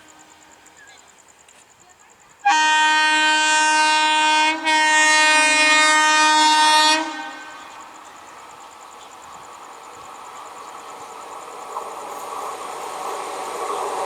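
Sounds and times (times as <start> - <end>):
faint steady noise: 0.0 - 14.0
locomotive air horn blasts: 2.4 - 7.8.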